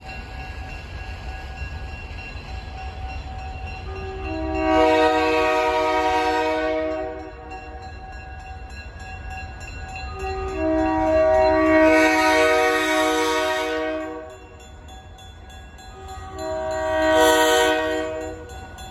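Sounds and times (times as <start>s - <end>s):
locomotive air horn chord: 3.9s - 7.5s, 10.2s - 14.4s, 16.2s - 18.5s.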